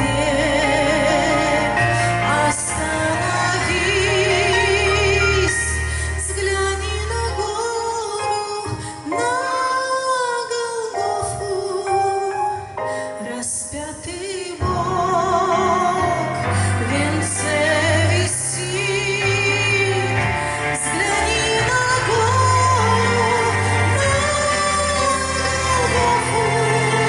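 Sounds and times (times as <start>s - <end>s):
steady bass: 0.0s - 7.8s, 14.6s - 27.0s
woman singing with vibrato: 0.0s - 27.0s.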